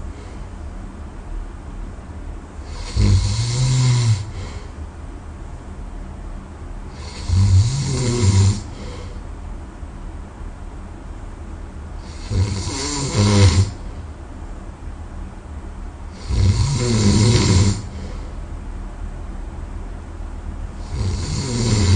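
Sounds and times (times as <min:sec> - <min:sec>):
quiet breathing: 0:00.0 - 0:00.7, 0:02.6 - 0:04.9, 0:08.5 - 0:09.3, 0:17.6 - 0:18.6
loud low-pitched snores: 0:02.6 - 0:04.6, 0:06.9 - 0:09.1, 0:12.0 - 0:13.8, 0:16.1 - 0:18.1, 0:20.8 - 0:21.9.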